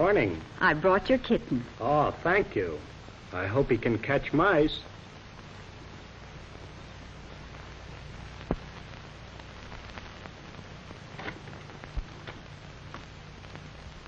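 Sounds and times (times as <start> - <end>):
film hiss and crackle: 0.0 - 14.0
sharp pops: 8.3 - 13.7.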